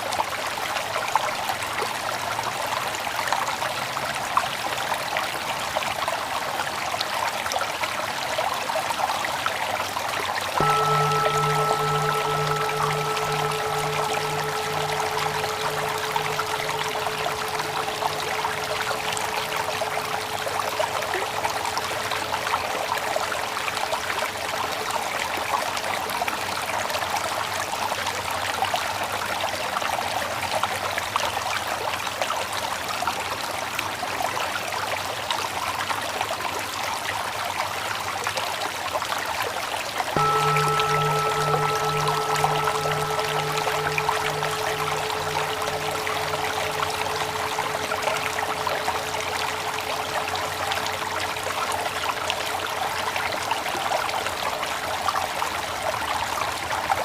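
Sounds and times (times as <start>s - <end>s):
water flowing steadily: 0.0s - 28.0s, 40.2s - 57.0s
struck bell ringing: 10.6s - 22.3s, 40.2s - 53.2s.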